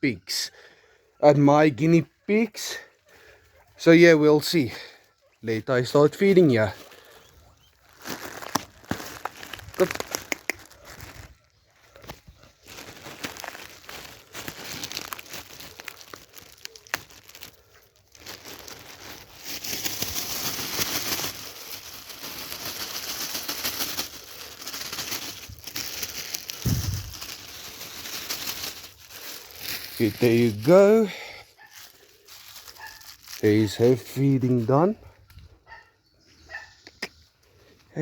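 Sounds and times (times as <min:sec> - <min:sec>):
spinach leaves rustling and tearing: 0:06.0 - 0:34.8.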